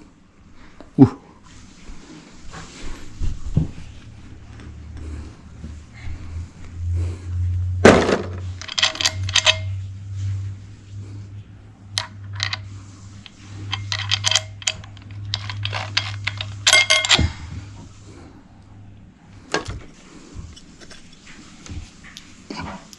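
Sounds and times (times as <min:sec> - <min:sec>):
steady low hum: 0:00.0 - 0:22.9
small metal pieces clinking: 0:08.5 - 0:09.8, 0:12.0 - 0:12.6, 0:13.2 - 0:17.3.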